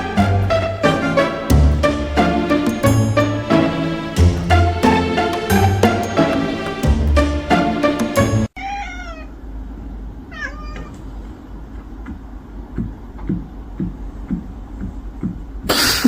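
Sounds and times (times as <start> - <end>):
background music: 0.0 - 8.5
cat meowing: 8.6 - 9.4, 10.3 - 11.0.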